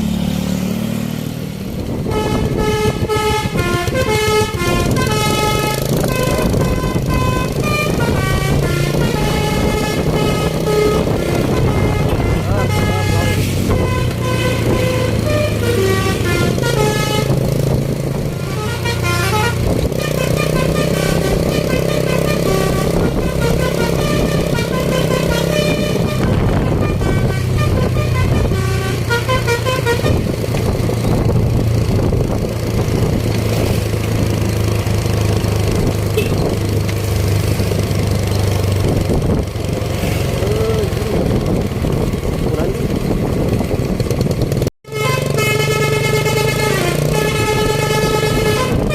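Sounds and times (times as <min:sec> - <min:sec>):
diesel engine running: 0:00.0 - 0:48.9
multi-tone bus horn tune: 0:01.8 - 0:31.3, 0:35.0 - 0:36.8, 0:39.9 - 0:41.6, 0:44.8 - 0:48.9.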